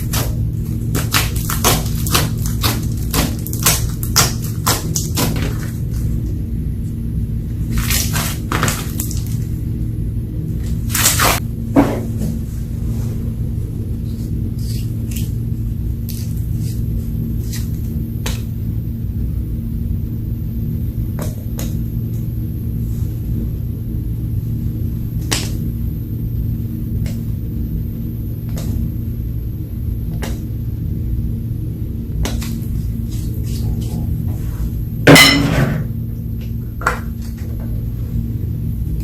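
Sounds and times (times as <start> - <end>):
low hum: 8.8 - 39.0.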